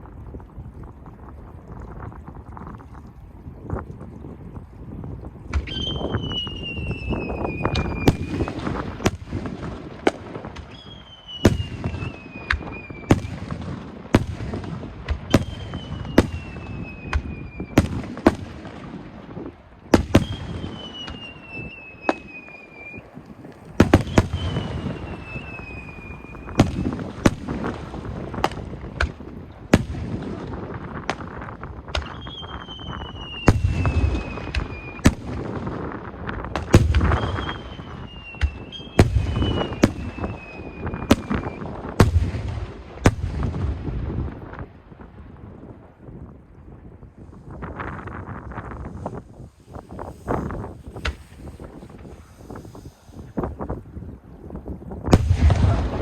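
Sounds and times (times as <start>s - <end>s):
firework rumble: 0.0s - 56.0s
firework shell bursts and crackle: 5.5s - 44.6s, 47.5s - 56.0s
whistling firework shell: 5.6s - 9.2s, 10.1s - 13.4s, 15.3s - 18.5s, 20.0s - 29.2s, 31.9s - 35.4s, 36.6s - 41.8s, 48.0s - 56.0s.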